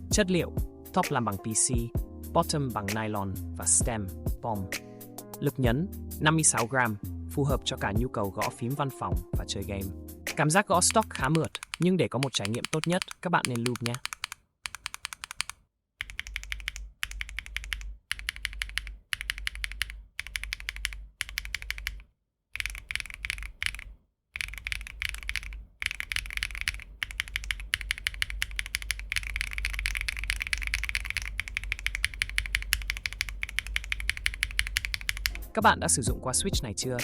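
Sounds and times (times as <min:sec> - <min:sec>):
rapid typing on mechanical keyboard: 0:10.9 - 0:35.4.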